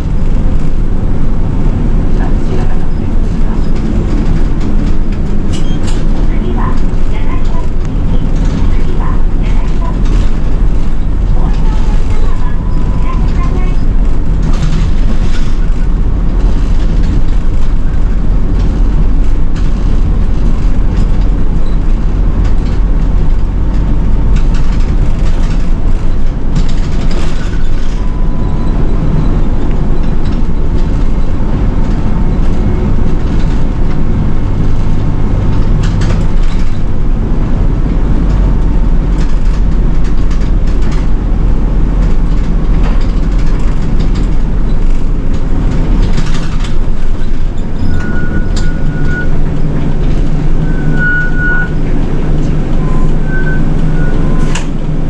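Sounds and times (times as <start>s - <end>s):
bus engine and road rumble: 0.0s - 55.0s
cabin rattles and clicks: 1.7s - 37.0s, 38.0s - 48.8s.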